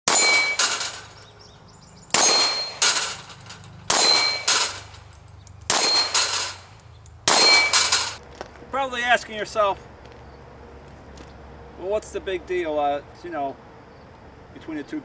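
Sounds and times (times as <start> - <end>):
pistol shots: 0.1 - 1.2, 2.1 - 5.1, 5.7 - 8.2
bullets clanging on steel: 0.1 - 8.2.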